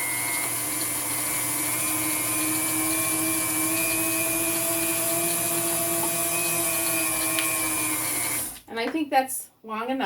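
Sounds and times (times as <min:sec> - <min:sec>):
stand mixer motor hum and whine: 0:00.0 - 0:08.6.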